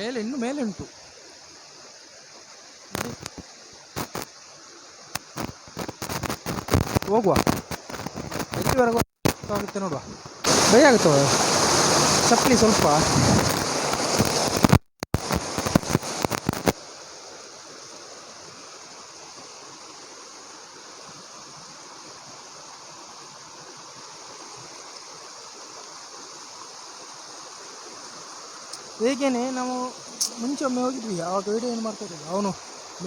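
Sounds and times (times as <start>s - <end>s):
waterfall rushing: 5.4s - 18.4s, 27.8s - 33.0s.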